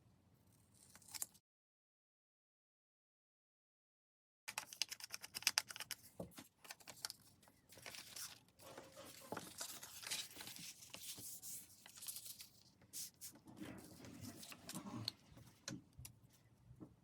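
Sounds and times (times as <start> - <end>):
paper rustling and tearing: 6.7 - 15.1.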